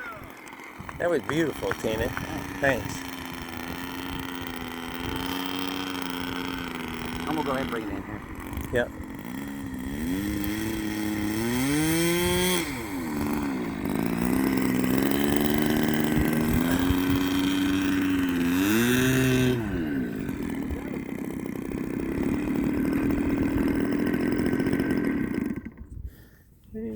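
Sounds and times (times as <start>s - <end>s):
model airplane engine running: 0.0s - 26.0s.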